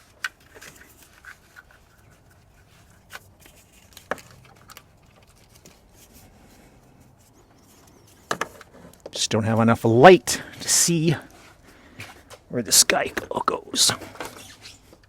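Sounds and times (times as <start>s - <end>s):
faint rustling of wiring: 0.0s - 9.8s.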